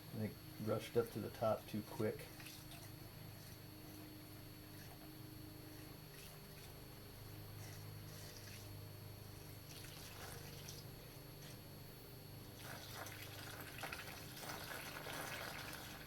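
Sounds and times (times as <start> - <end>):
steady low hum: 0.0 - 16.0
liquid trickling through a funnel: 1.8 - 4.1, 5.7 - 6.8, 7.6 - 8.8, 9.4 - 11.6, 12.6 - 16.0.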